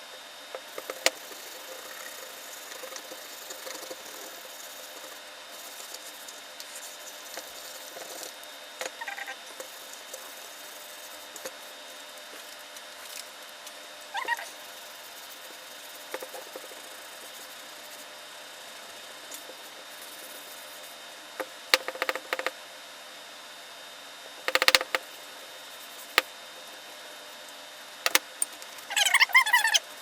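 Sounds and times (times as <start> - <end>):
clicks and taps of small parts: 21.8 - 22.5, 24.5 - 25.0, 28.1 - 28.5
chirpy squeak: 28.9 - 29.8.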